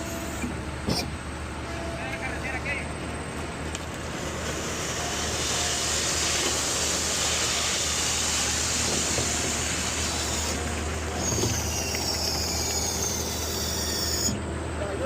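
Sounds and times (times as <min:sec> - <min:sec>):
truck engine drone: 0:00.0 - 0:15.0
rushing hiss: 0:03.9 - 0:14.4.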